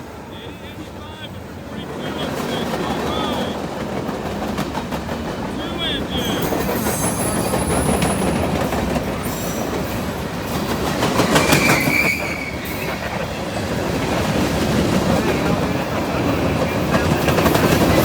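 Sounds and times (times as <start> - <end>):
freight train rumbling past: 0.0 - 18.0
wheels clacking over rail joints: 0.6 - 18.0
high-pitched wheel squeal: 6.1 - 8.6, 11.4 - 12.9.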